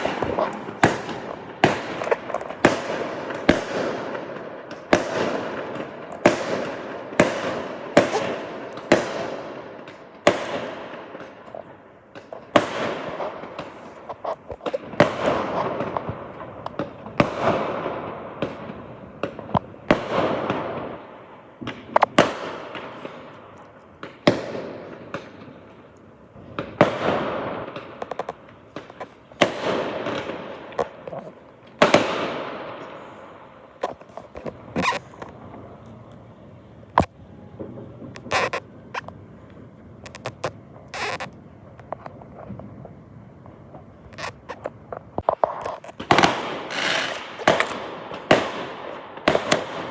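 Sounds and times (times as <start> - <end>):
fireworks bangs: 0.0 - 49.9.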